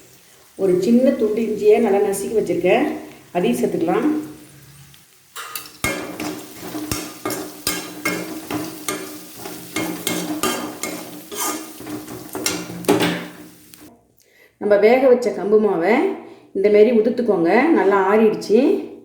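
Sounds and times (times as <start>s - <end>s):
onions sizzling in oil: 0.0s - 13.9s
spatula scraping a pan: 4.4s - 13.9s.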